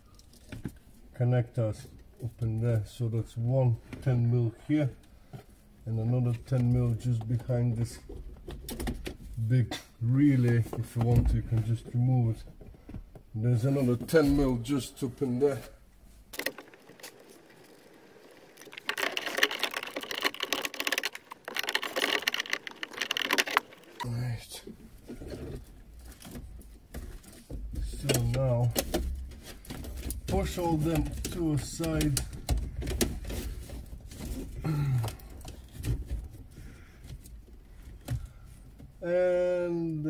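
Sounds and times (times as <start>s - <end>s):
wiring clicking and rustling: 5.0s - 9.4s, 16.2s - 39.0s
rattling: 16.2s - 37.3s.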